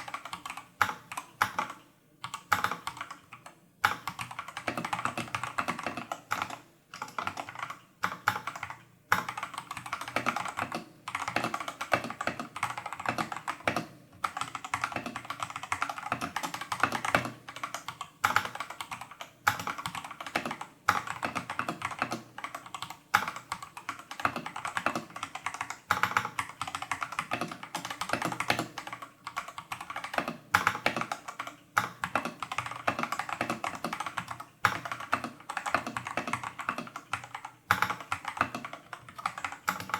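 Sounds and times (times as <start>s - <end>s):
mechanical keyboard typing: 0.0s - 39.9s.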